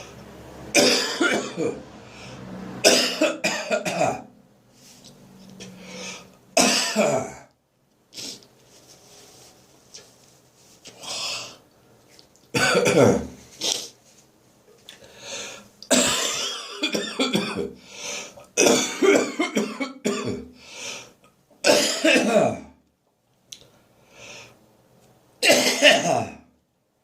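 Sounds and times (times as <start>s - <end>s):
man coughing: 0.8s - 1.9s, 2.8s - 4.3s, 6.6s - 7.5s, 12.6s - 13.3s, 15.9s - 17.8s, 18.6s - 20.5s, 21.7s - 22.7s, 25.4s - 26.4s.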